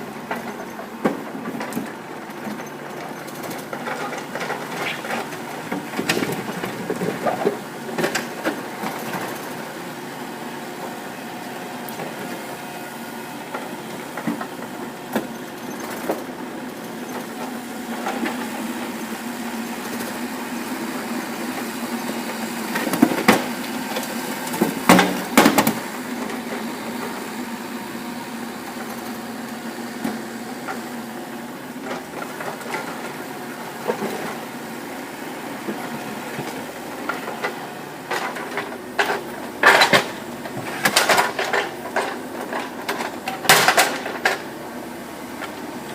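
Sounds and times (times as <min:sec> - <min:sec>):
diesel engine running: 0:00.0 - 0:45.9
excavator bucket clanking: 0:02.4 - 0:09.4, 0:37.1 - 0:44.5.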